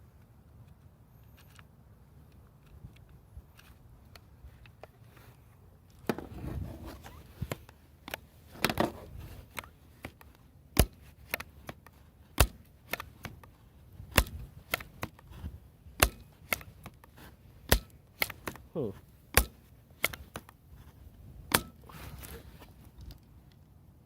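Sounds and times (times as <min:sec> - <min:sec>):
rustling handling noise: 0:01.3 - 0:23.7
bb rifle cracks: 0:16.0 - 0:17.1, 0:17.7 - 0:18.6.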